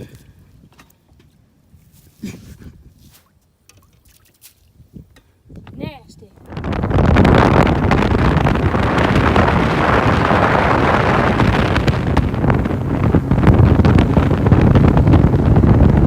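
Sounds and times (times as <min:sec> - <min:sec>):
wind buffeting microphone: 0:01.7 - 0:03.1, 0:04.7 - 0:16.0
boat running across water: 0:06.5 - 0:16.0.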